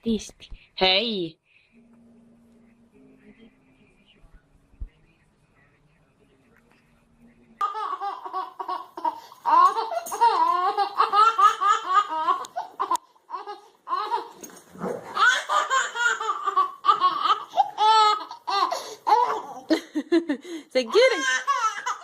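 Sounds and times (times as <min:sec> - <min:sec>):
baby laughing: 0:07.6 - 0:14.5, 0:15.1 - 0:19.8, 0:20.9 - 0:22.0.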